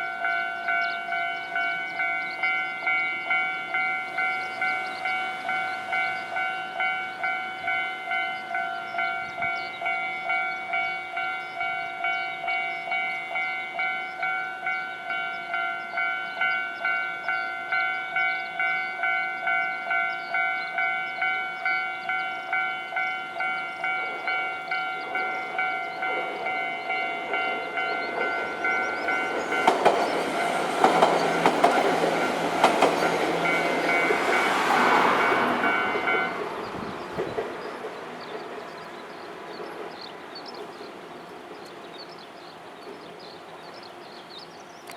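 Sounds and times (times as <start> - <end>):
train rushing past: 1.2 - 43.3
train wheels knocking on rail joints: 23.0 - 41.0.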